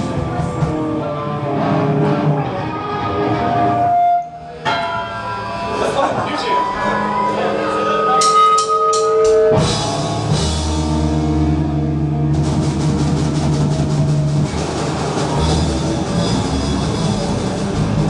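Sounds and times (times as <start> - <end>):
live rock band playing: 0.0 - 18.0.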